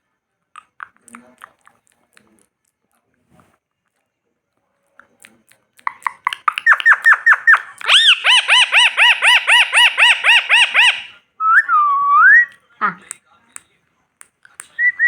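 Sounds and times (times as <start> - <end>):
parrot screeching: 6.0 - 11.2.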